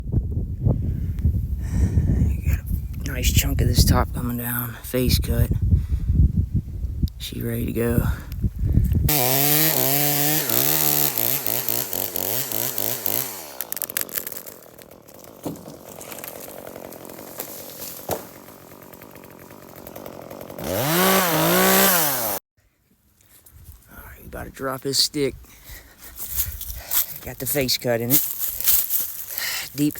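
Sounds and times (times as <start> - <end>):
chainsaw cutting wood: 9.1 - 22.4, 28.2 - 29.9.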